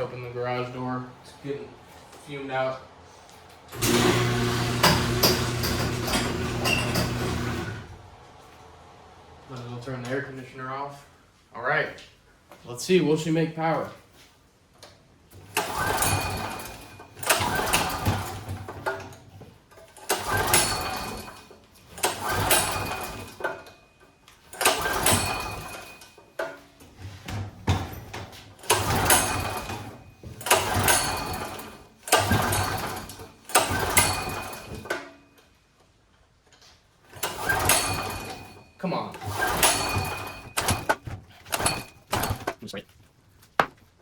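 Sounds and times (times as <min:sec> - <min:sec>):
generator engine pull-start cranking: 0:03.7 - 0:07.9, 0:15.4 - 0:23.8, 0:24.5 - 0:26.5, 0:28.6 - 0:35.2, 0:37.1 - 0:42.7.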